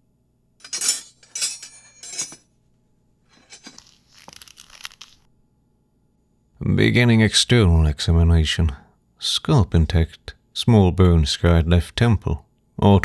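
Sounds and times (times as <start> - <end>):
light clinks: 0.6 - 2.4
soft crackling: 3.3 - 5.3
crinkling tearing bursts: 3.8 - 5.3.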